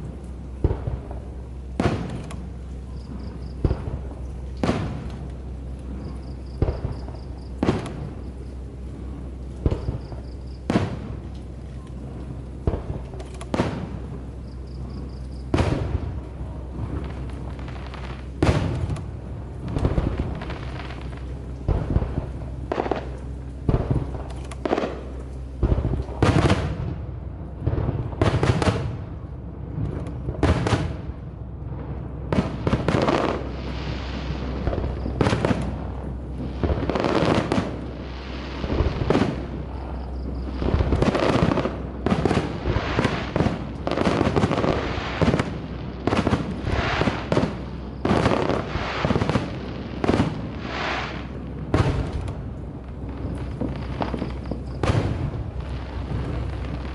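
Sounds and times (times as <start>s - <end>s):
fireworks bangs: 0.0s - 56.9s
fireworks crackle: 0.0s - 56.9s.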